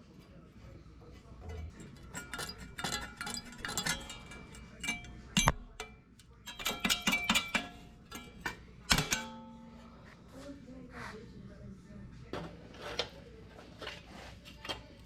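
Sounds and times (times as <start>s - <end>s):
sheet metal clinks and taps: 1.5s - 9.9s.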